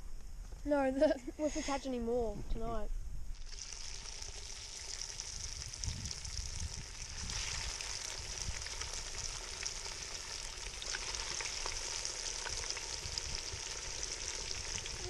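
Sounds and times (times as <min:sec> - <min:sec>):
fish frying in hot oil: 0:03.3 - 0:15.0.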